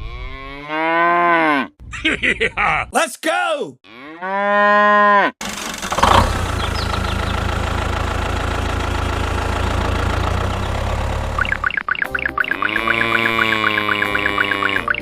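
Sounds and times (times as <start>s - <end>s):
tractor engine idling: 5.4s - 12.2s.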